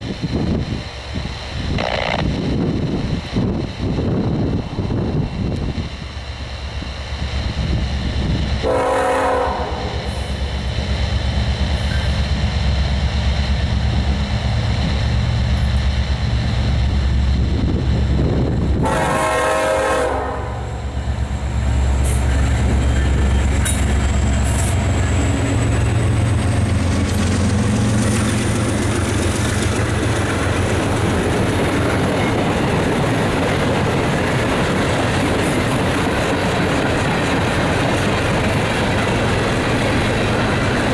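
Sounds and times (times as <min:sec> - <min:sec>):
diesel locomotives rumbling: 0:00.0 - 0:40.9
train wheels rolling on rails: 0:00.0 - 0:40.9
train air horn blasts: 0:08.6 - 0:10.4, 0:18.8 - 0:20.9.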